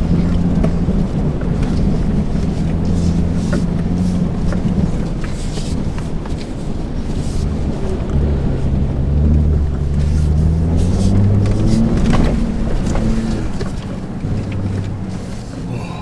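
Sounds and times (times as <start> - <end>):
pickup engine revving hard: 7.4 - 15.8.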